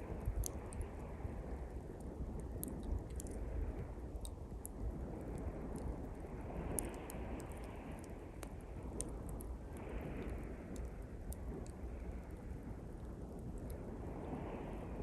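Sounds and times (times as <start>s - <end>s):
campfire crackling and popping: 0.0s - 14.0s
waves washing in: 4.8s - 15.0s
surf rumbling: 4.9s - 15.0s.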